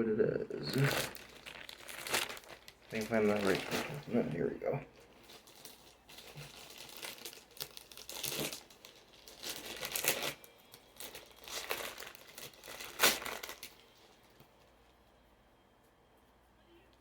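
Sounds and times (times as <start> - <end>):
packaging being torn open: 0.6 - 4.2, 4.9 - 14.1.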